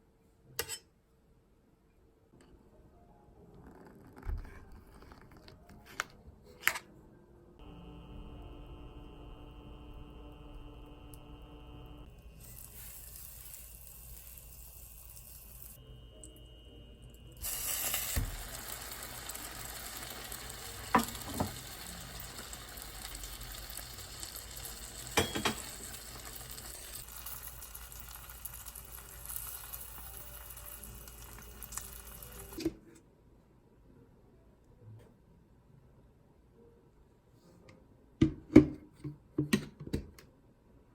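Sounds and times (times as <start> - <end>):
food sizzling in a pan: 12.2 - 15.8, 17.4 - 32.6.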